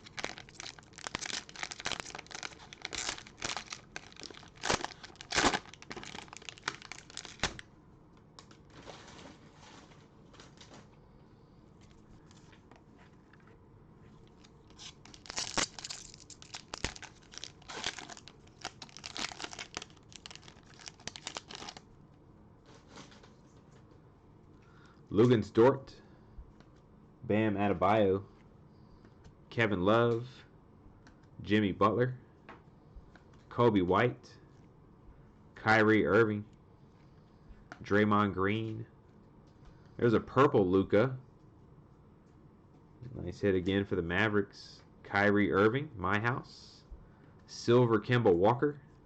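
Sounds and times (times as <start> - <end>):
cellophane tearing and crinkling: 0.0 - 7.6, 14.4 - 21.8.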